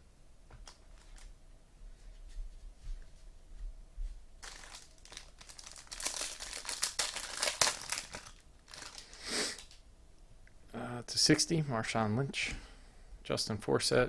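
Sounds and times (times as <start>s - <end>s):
card wrapper tearing and crinkling: 4.4s - 9.8s.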